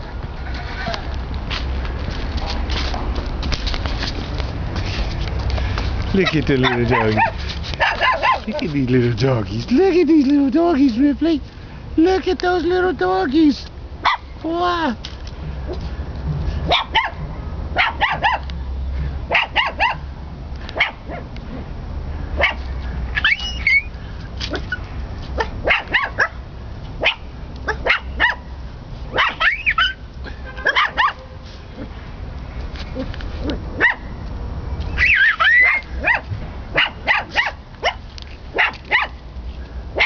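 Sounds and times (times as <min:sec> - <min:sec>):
puppies yipping and barking: 0:06.2 - 0:08.7, 0:23.2 - 0:23.9, 0:29.1 - 0:30.0, 0:30.6 - 0:31.2, 0:35.0 - 0:39.2.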